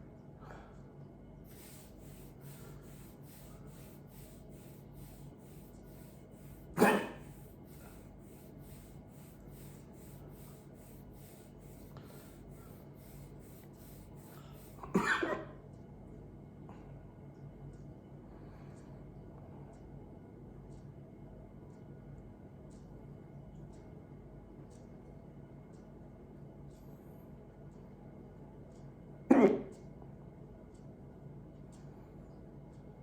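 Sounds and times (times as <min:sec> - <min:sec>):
person hiccuping: 0:06.8 - 0:07.3, 0:29.3 - 0:29.8.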